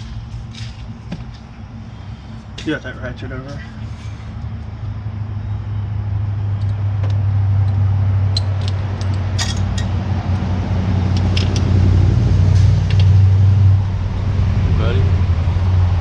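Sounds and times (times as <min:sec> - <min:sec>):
engine humming: 0:00.0 - 0:16.0.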